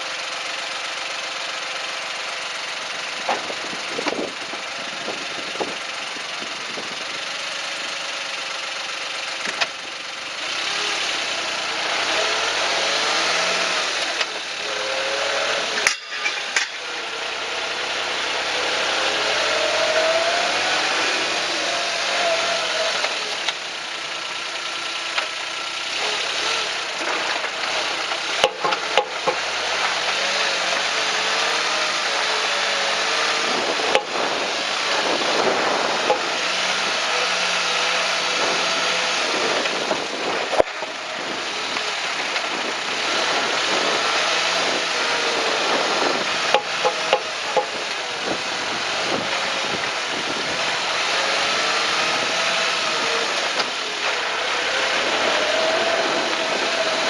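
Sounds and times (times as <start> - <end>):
car engine revving: 0.0 - 57.0
road noise: 0.0 - 57.0
sharp suspension knocks: 15.8 - 16.9.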